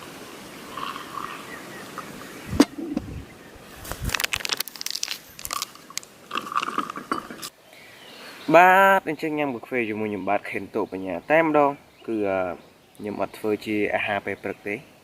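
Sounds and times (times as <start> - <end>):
crunching and clicking handling noises: 3.8 - 7.5.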